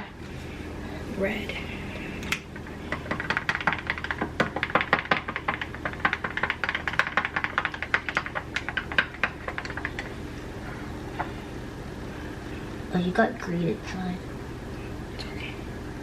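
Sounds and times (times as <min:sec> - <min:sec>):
utensil stirring batter in bowl: 0:02.5 - 0:10.9.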